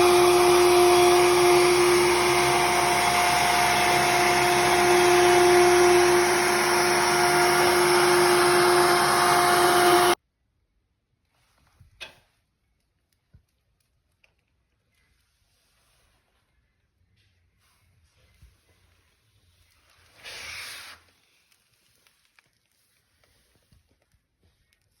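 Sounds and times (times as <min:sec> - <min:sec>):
trim router whining: 0:00.0 - 0:10.2.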